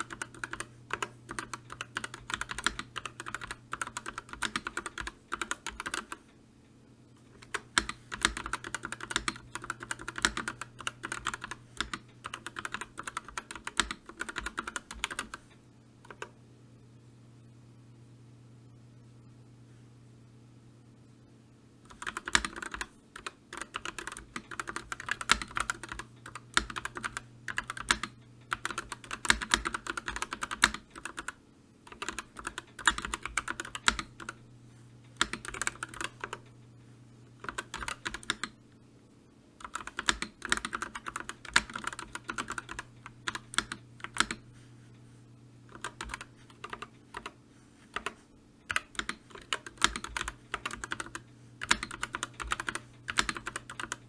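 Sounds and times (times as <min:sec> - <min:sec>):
computer keyboard typing: 0:00.0 - 0:06.2, 0:07.4 - 0:15.4, 0:16.0 - 0:16.4, 0:21.9 - 0:34.4, 0:35.1 - 0:36.6, 0:37.4 - 0:38.6, 0:39.6 - 0:44.5, 0:45.7 - 0:54.0
faint low hum: 0:00.0 - 0:54.0.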